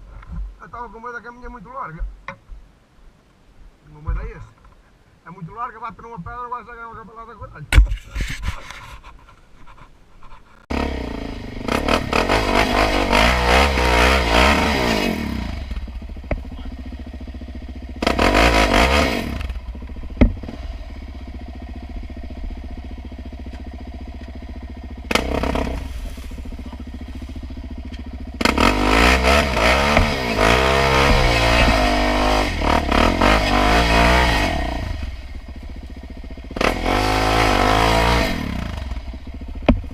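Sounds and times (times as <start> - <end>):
quad engine revving: 10.7 - 39.9
sharp knock: 29.6 - 32.0.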